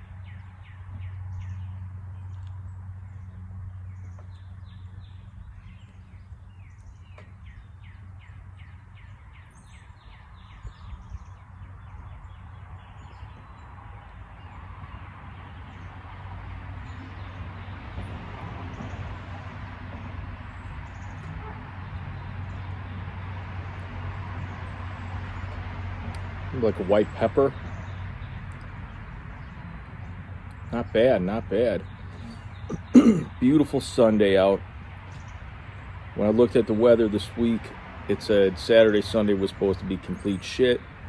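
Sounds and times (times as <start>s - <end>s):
bird chirping: 0.0s - 17.8s, 26.6s - 37.6s.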